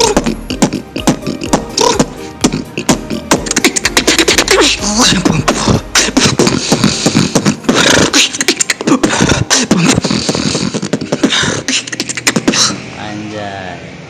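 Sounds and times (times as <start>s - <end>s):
snoring bass sound: 0.0s - 3.6s
person beatboxing: 0.0s - 12.8s.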